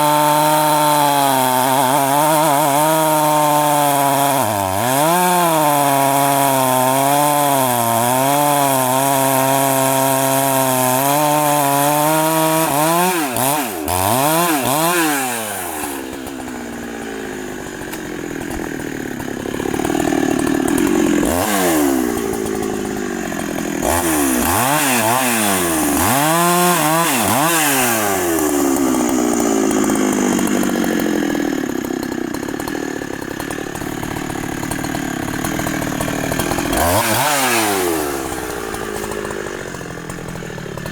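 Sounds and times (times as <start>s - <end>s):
chainsaw revving: 0.0s - 40.9s.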